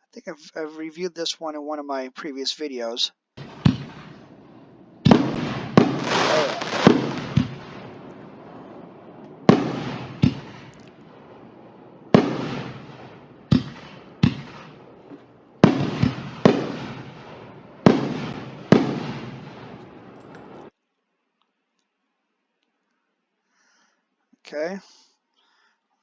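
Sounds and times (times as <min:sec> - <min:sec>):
fireworks bangs: 0:03.4 - 0:20.7.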